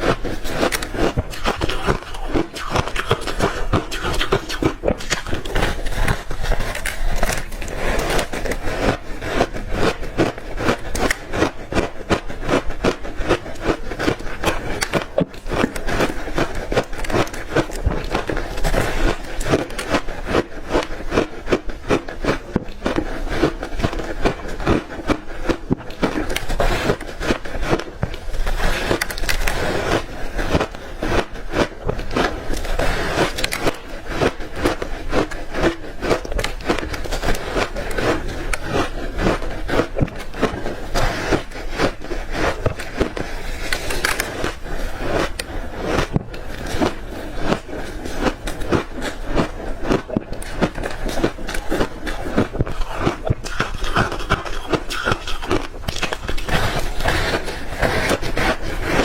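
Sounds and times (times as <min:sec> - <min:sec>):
ice chunks crunching being chewed: 0:00.0 - 0:59.0.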